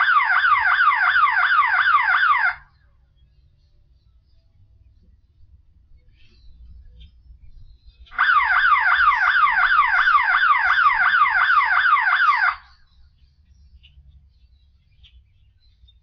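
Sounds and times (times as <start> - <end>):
sweeping electronic siren wail: 0.0 - 2.7, 8.1 - 12.8.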